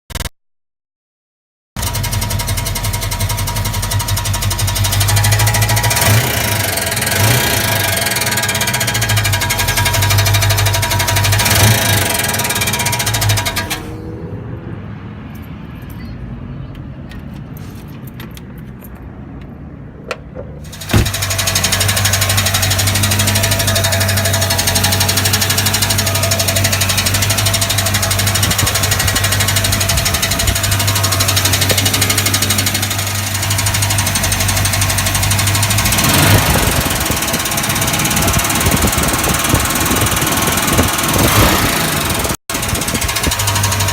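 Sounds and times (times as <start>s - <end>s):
car engine idling: 1.8s - 14.2s, 20.6s - 43.9s
loud engine rattle: 1.8s - 14.3s, 20.6s - 43.9s.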